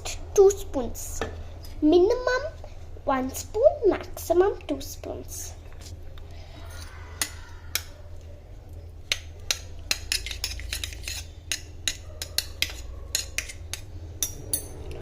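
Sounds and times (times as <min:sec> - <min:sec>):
spoon clinking against dish: 0:09.1 - 0:15.0.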